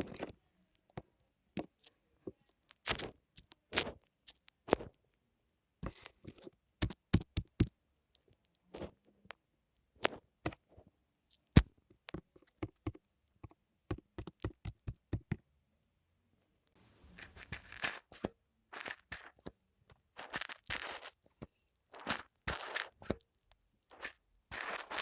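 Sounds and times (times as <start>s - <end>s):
foam tapping and clicking: 6.8s - 7.7s, 11.6s - 15.4s
foam crackling and scratching: 17.1s - 19.5s, 20.2s - 23.2s, 23.9s - 25.0s.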